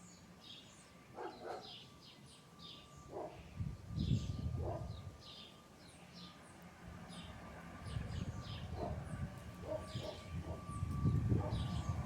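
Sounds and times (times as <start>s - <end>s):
dog barking: 1.2s - 1.8s, 3.1s - 3.4s, 4.6s - 4.9s, 8.8s - 9.0s, 9.6s - 10.6s.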